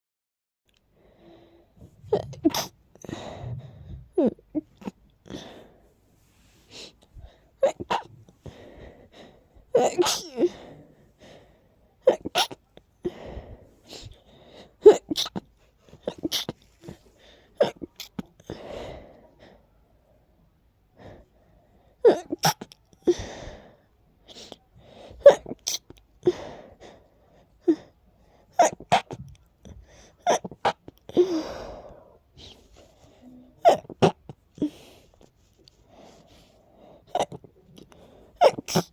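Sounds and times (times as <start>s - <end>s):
breathy intakes: 0.9s - 5.9s
person sneezing: 2.0s - 2.8s, 9.8s - 10.6s, 14.8s - 16.6s.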